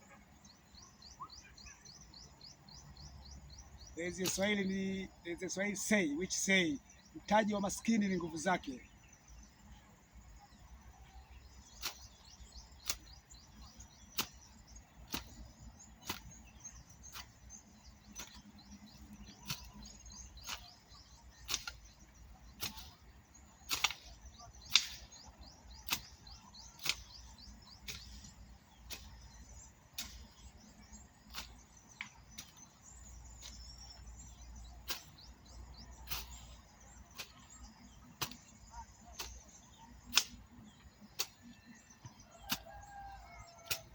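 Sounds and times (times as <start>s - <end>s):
birds chirping: 0.0s - 43.9s
insects chirping: 0.0s - 43.9s
hoe chopping into soil: 4.0s - 5.0s, 11.6s - 43.9s.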